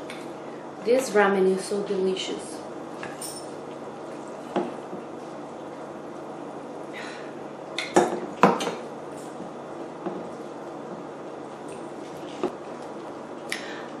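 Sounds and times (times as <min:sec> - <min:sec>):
steady low hum: 0:00.0 - 0:14.0
utensils clinking against a bowl: 0:03.0 - 0:03.6.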